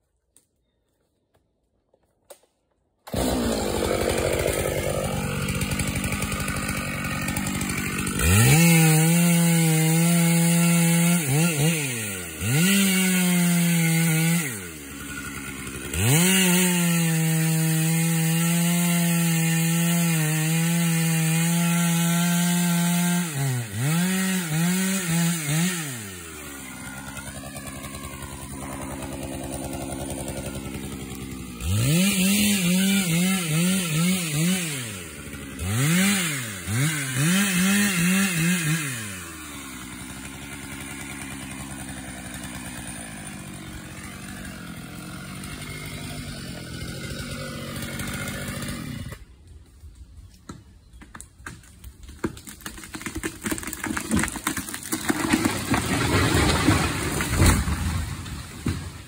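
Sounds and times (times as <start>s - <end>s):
chainsaw revving: 3.1s - 49.3s, 53.0s - 59.0s.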